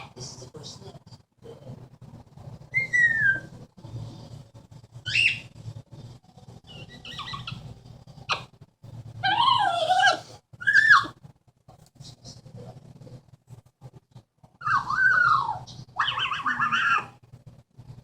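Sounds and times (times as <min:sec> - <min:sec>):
parrot whistles and calls: 0:02.7 - 0:03.5, 0:05.0 - 0:05.5, 0:06.7 - 0:07.6, 0:09.3 - 0:11.1, 0:14.6 - 0:17.2.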